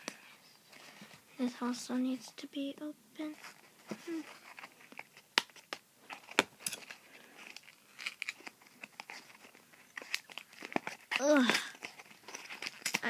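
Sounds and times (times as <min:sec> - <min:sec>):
packaging crinkling and tearing: 0:03.4 - 0:13.0.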